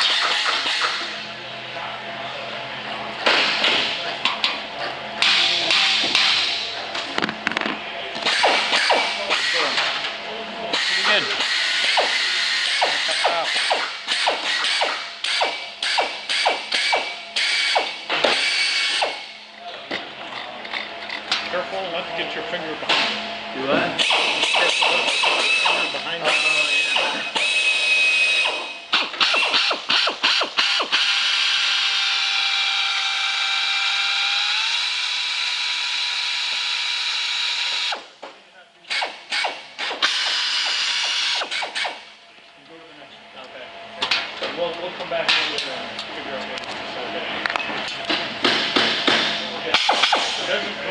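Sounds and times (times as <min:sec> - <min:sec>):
power drill bursts drilling rivets: 0:25.1 - 0:38.0.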